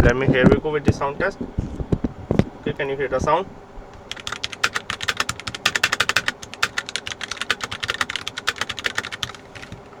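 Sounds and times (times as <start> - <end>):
mechanical keyboard typing: 4.0 - 10.0.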